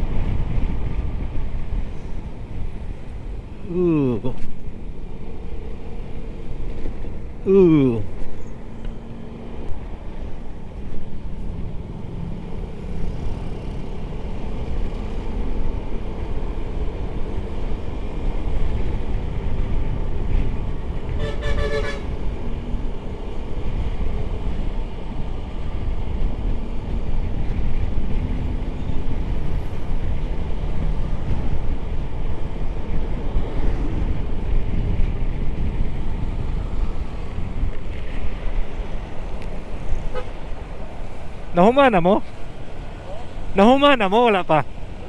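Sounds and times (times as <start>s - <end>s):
road noise: 0.0s - 45.0s
vehicle horn: 21.2s - 22.3s, 40.0s - 40.6s.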